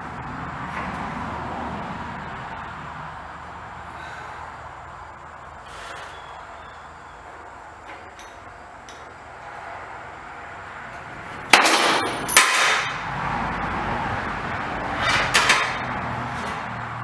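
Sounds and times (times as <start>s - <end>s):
steel tools clanking on metal: 5.6s - 10.2s, 10.9s - 13.1s, 14.9s - 16.8s.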